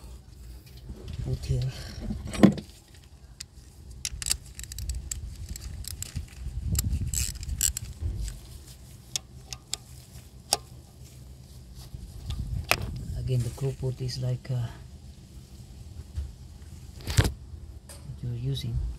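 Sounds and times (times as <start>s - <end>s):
low steady hum: 0.0s - 18.9s
metallic tool clicks: 4.0s - 8.0s.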